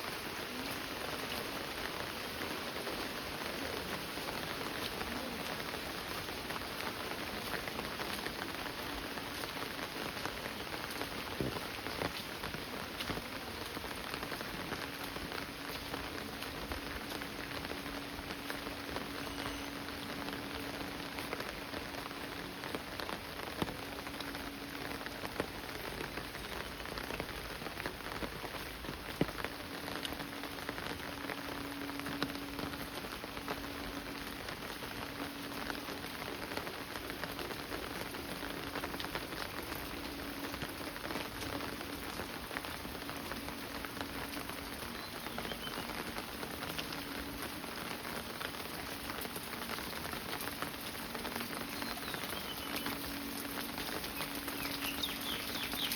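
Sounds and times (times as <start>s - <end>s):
rain patter: 0.0s - 55.9s.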